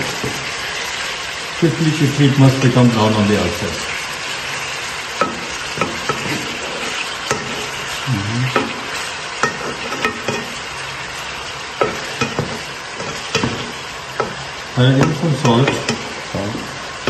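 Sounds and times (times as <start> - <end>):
meat sizzling in a pan: 0.0 - 17.0
utensil clicking against pan: 5.2 - 10.6, 11.8 - 16.7.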